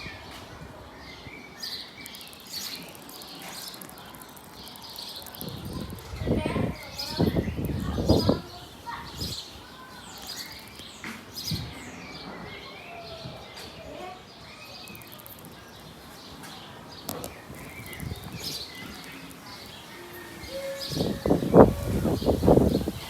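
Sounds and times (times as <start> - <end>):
bird whistling and clicking: 2.0 - 6.0.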